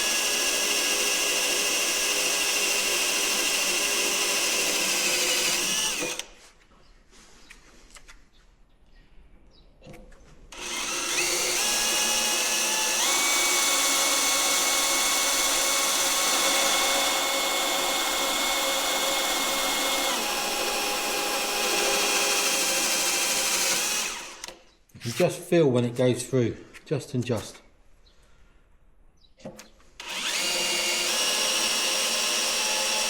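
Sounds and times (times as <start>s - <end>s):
electric drill whining through metal: 0.0s - 6.4s, 10.5s - 25.2s, 30.0s - 33.0s.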